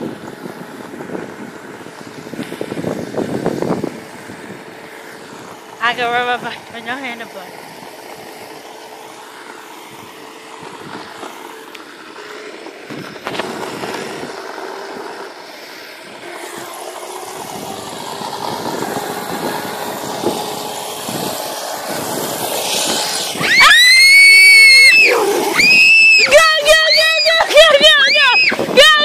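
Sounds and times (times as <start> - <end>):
wind and bicycle riding noise: 0.0 - 29.0
high-pitched wavering squeal: 16.0 - 28.7.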